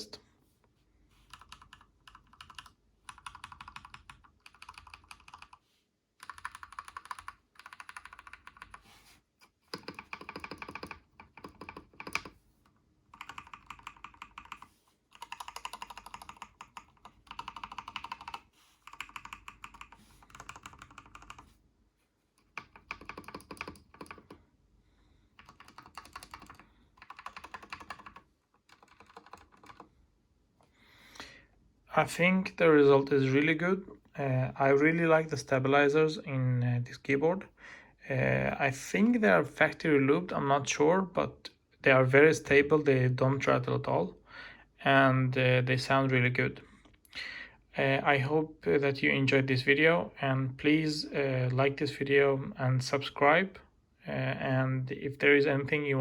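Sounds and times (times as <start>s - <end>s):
mechanical keyboard typing: 1.3s - 5.6s, 6.2s - 8.8s, 9.7s - 12.4s, 13.1s - 21.5s, 22.4s - 24.4s, 25.4s - 29.9s.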